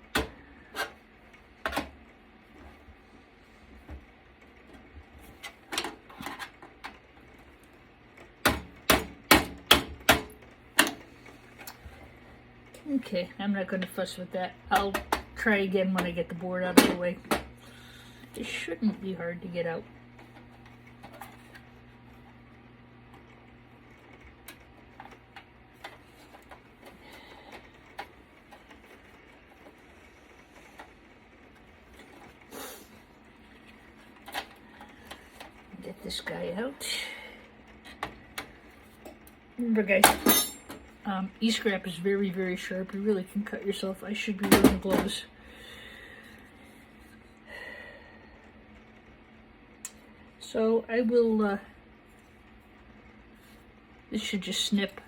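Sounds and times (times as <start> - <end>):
knocks inside computer case: 8.4 - 10.3.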